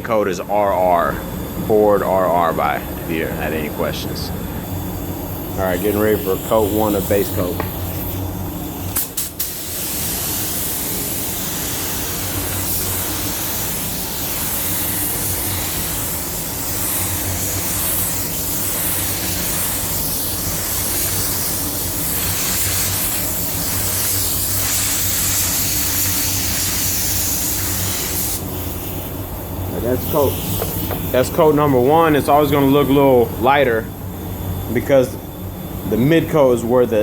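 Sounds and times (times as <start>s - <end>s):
spray gun hissing: 4.7s - 29.2s.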